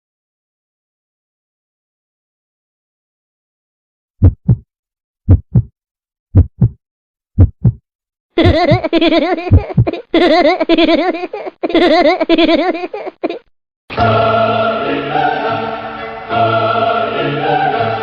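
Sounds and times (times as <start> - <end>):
heartbeat lub-dub beats: 4.2 - 4.6, 5.3 - 5.7, 6.3 - 6.8, 7.4 - 7.8, 8.4 - 8.9, 9.5 - 10.0
wavering choir-like sound effect: 13.9 - 18.0.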